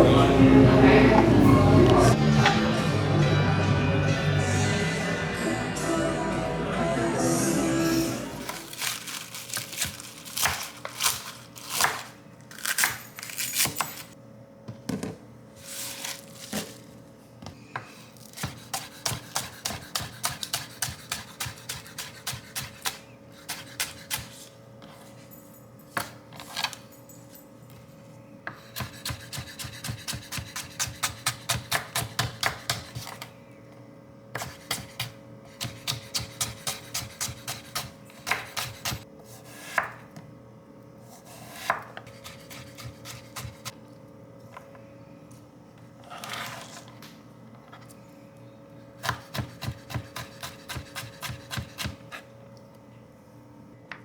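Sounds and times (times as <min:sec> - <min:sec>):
faint background music: 0:00.0 - 0:09.0
knife chopping on cutting board: 0:17.8 - 0:24.4, 0:28.5 - 0:33.2, 0:34.3 - 0:40.0, 0:41.2 - 0:43.7, 0:49.0 - 0:52.2.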